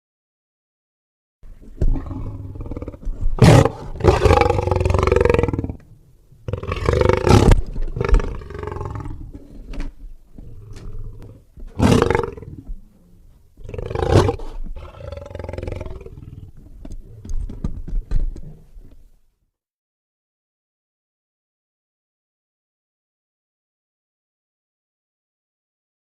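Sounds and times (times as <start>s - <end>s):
lion growling and snarling: 1.7s - 9.5s, 10.4s - 12.8s, 13.6s - 17.4s.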